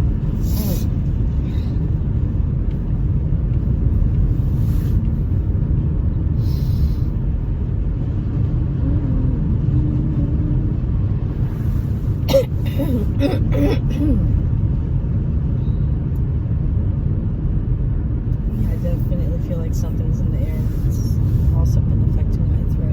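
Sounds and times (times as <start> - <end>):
steady low rumble: 0.0 - 22.9
woman sneezing: 12.3 - 14.3.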